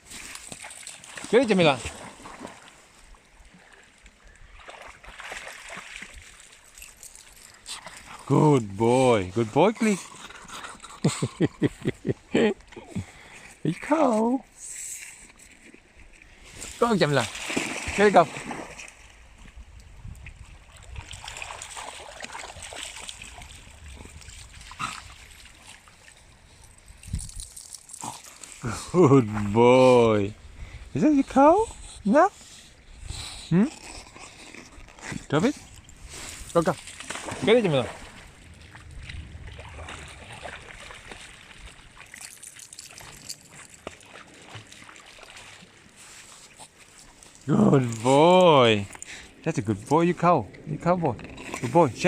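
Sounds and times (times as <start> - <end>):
dog splashing through water: 0.1 - 2.9, 4.6 - 8.3, 16.8 - 19.2, 20.7 - 28.6, 36.4 - 47.9
small clicks and rustles: 6.3 - 8.2, 25.3 - 28.6, 42.0 - 44.8.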